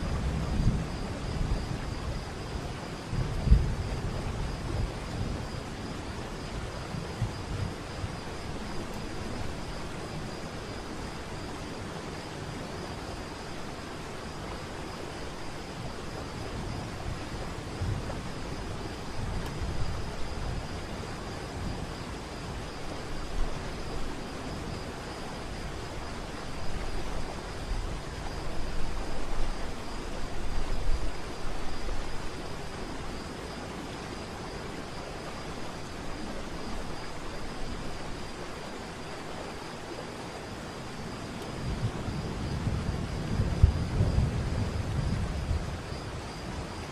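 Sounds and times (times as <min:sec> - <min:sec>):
wind buffeting microphone: 0:00.0 - 0:10.3, 0:15.7 - 0:24.0, 0:41.4 - 0:46.9.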